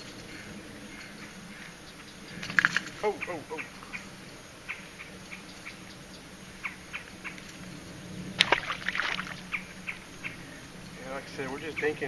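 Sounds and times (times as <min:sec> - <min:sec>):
fish splashing at water surface: 0:08.4 - 0:09.6.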